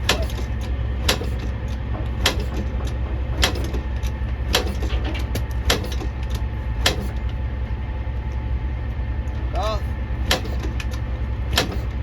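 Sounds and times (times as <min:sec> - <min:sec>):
kick-starter lever clanking: 0:00.0 - 0:07.3, 0:10.2 - 0:12.0
engine turning over whir: 0:00.0 - 0:12.0
steady low hum: 0:00.0 - 0:12.0.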